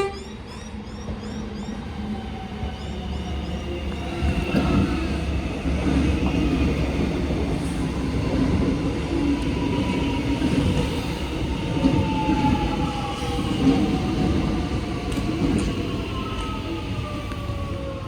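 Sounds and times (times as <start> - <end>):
train wheels rumbling on rails: 0.0 - 18.0.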